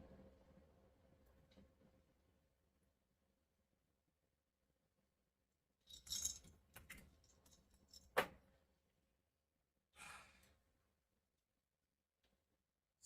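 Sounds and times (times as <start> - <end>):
person sighing breathily: 10.0 - 10.5.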